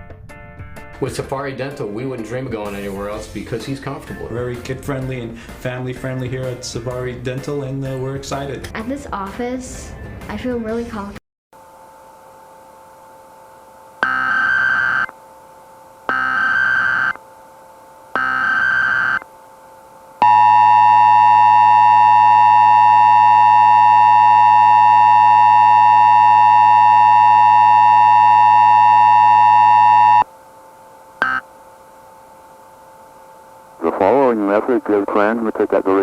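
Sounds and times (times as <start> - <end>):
faint steady hum: 11.6 - 36.0
data tone bursts: 14.0 - 15.1, 16.1 - 17.2, 18.2 - 19.3, 20.2 - 30.3, 31.2 - 31.4
emergency attention signal: 14.0 - 15.1, 16.1 - 17.2, 18.2 - 19.2, 20.2 - 30.3.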